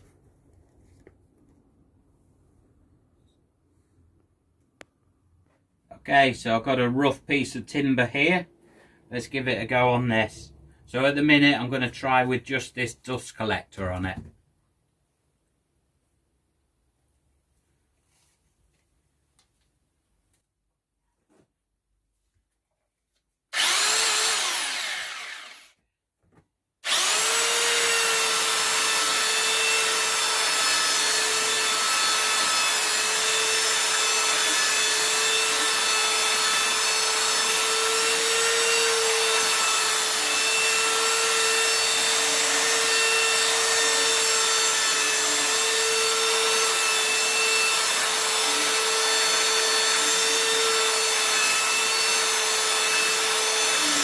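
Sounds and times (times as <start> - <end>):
belt sander whining: 23.5 - 25.7, 26.8 - 54.0.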